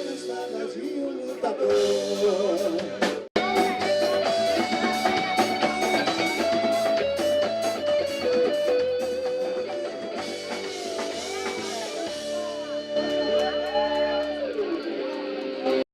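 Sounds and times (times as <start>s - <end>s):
drum beat: 1.3s - 14.6s
guitar melody: 3.4s - 15.8s.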